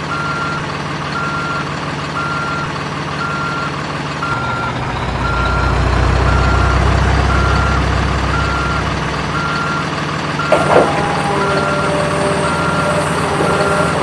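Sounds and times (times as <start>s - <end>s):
reversing alarm beeps: 0.1s - 0.6s, 1.2s - 14.0s
low rumble: 4.3s - 9.7s
steady lower tones: 10.4s - 14.0s.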